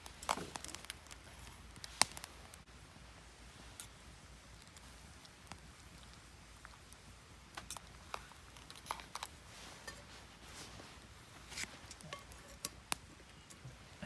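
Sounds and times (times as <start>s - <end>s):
wood fire crackling: 0.0s - 14.0s.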